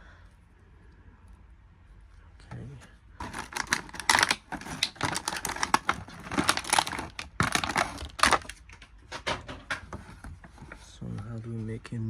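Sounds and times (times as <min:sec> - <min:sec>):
plastic packaging crinkling: 0:03.2 - 0:08.9, 0:09.7 - 0:10.9.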